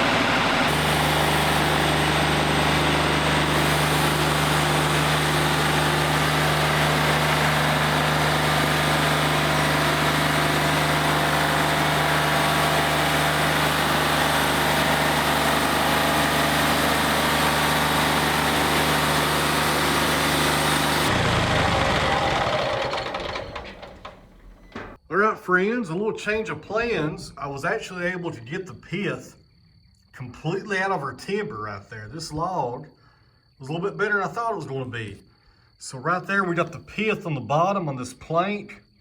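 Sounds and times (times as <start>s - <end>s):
band sawmill engine humming: 0.0s - 25.0s.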